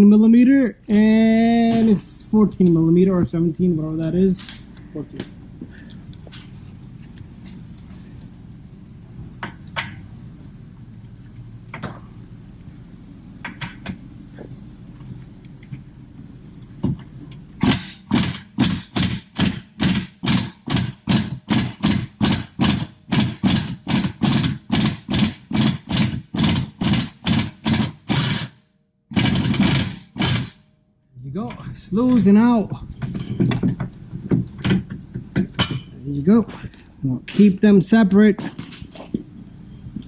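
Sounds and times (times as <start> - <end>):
power wrench bursts: 17.6 - 30.6.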